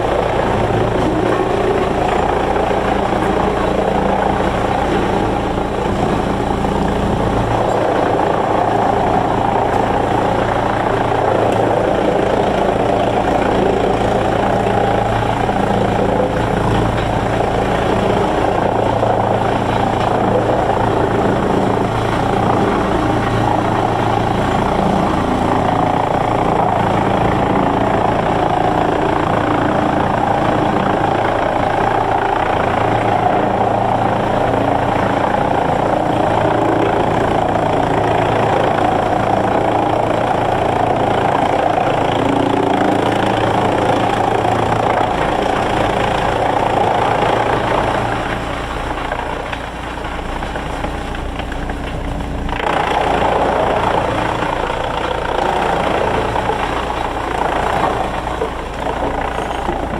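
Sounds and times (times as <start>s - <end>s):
sawmill machinery running: 0.0s - 59.9s.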